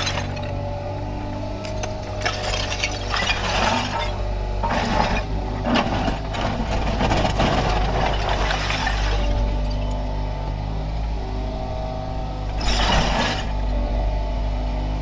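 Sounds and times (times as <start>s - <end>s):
excavator diesel engine running: 0.0s - 15.0s
knocks and scraping of digging: 1.6s - 10.0s, 12.5s - 13.6s.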